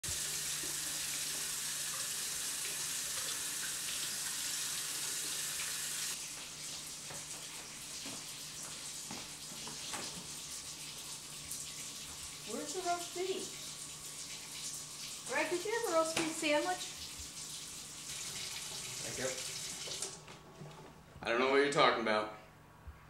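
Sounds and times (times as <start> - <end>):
tap running: 15.8 - 17.4, 18.1 - 21.0.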